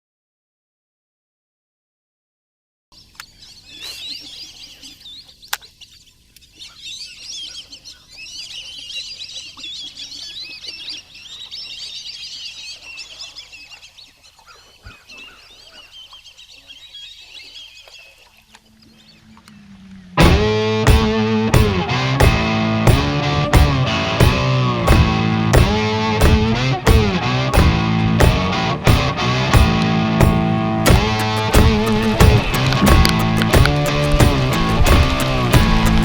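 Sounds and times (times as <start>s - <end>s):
birds chattering and chirping: 3.0s - 20.2s.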